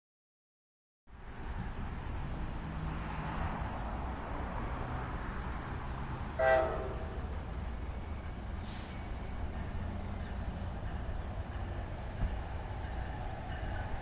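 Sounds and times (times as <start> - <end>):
train rumbling: 1.1 - 14.0
train horn blast: 6.4 - 7.2.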